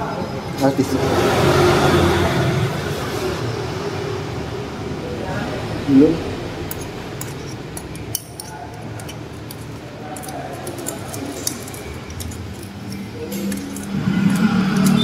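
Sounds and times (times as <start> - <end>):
steady background hum: 0.0 - 15.0
metal tools clinking: 6.7 - 15.0.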